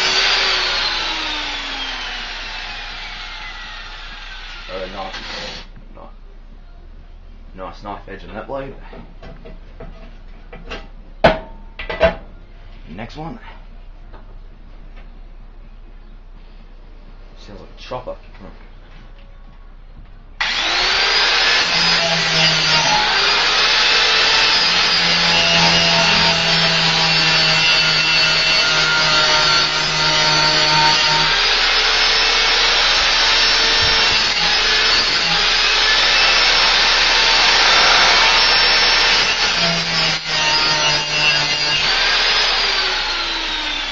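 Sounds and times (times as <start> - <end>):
angle grinder grinding metal: 0.0 - 5.7, 20.4 - 43.9.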